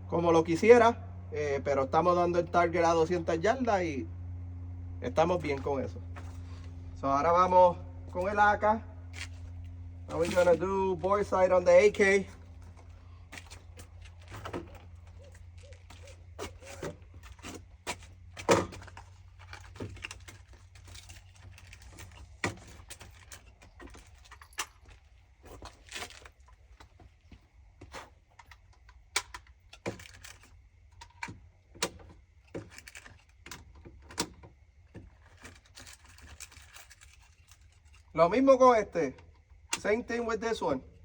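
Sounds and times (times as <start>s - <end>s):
equipment clicks and clinks: 9.1s - 26.9s, 35.0s - 38.2s.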